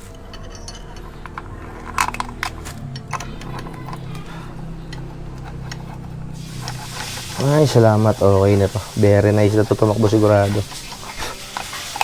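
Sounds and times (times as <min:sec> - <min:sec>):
metal clinks and taps: 0:00.0 - 0:07.2
steady low hum: 0:00.0 - 0:12.0.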